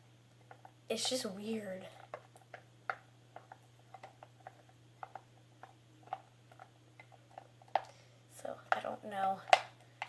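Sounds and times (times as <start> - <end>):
faint steady hum: 0.0 - 10.0
spoon stirring slime in bowl: 0.4 - 8.0.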